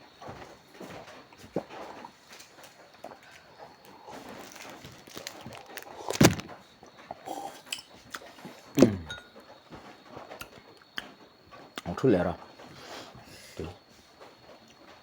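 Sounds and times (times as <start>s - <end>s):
quiet chewing: 0.1s - 15.0s
loud sudden mouth sounds: 7.2s - 7.8s, 8.8s - 9.2s.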